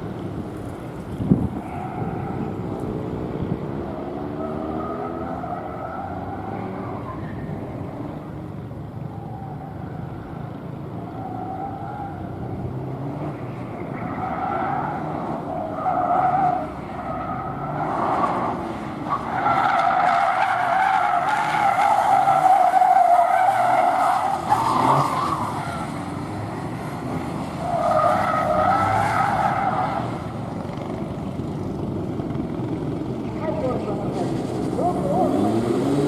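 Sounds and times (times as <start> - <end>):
car engine at speed: 0.0 - 36.0.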